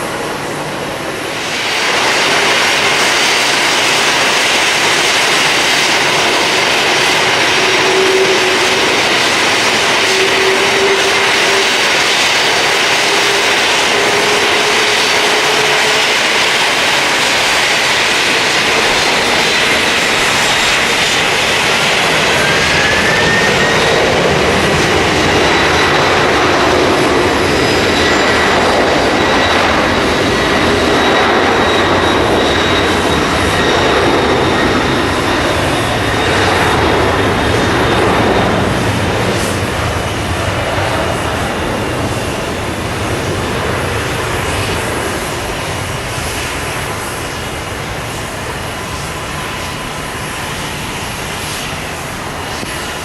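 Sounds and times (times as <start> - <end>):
jet engines roaring: 0.0 - 53.0.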